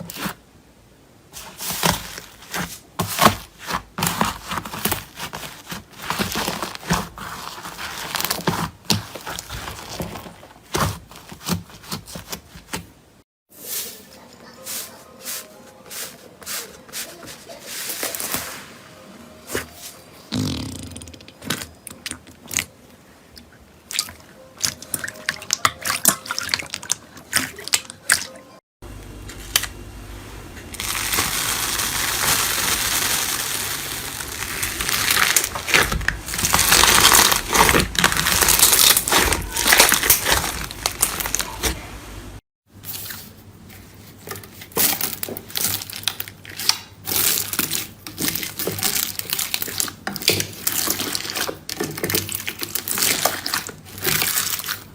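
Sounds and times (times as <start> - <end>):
slime squelching and popping: 34.8 - 41.6.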